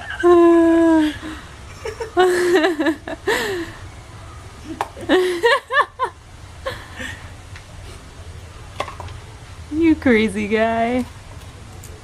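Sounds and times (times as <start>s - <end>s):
person laughing: 0.0s - 3.7s, 5.0s - 7.2s.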